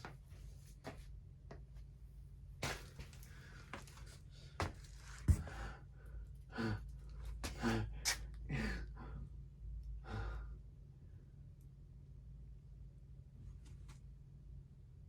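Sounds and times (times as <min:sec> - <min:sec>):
low steady hum: 0:00.0 - 0:15.0
person sighing and grunting: 0:07.5 - 0:09.2.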